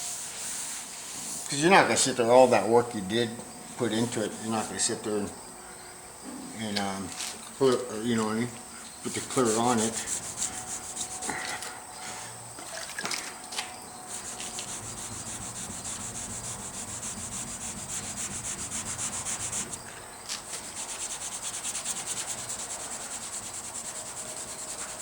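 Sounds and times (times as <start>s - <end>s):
sandpaper rubbing on metal: 9.0s - 11.4s, 14.1s - 19.8s, 20.5s - 25.0s.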